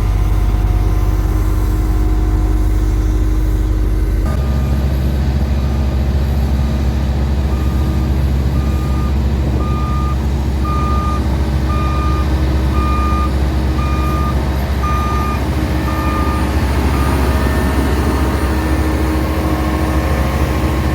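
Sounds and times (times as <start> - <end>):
diesel engine running: 0.0 - 20.9
reversing alarm beeping: 4.2 - 5.0, 7.5 - 18.4.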